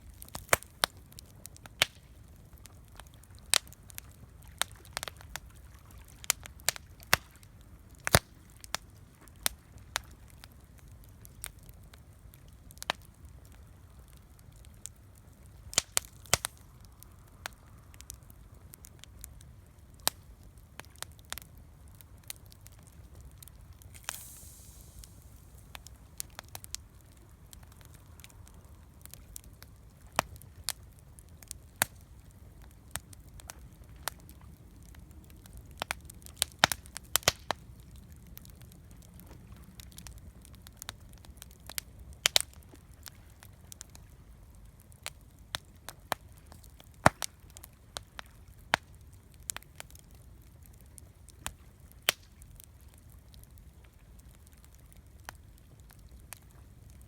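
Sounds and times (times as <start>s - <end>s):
campfire crackling and popping: 0.0s - 57.0s
low rumble: 23.9s - 26.3s.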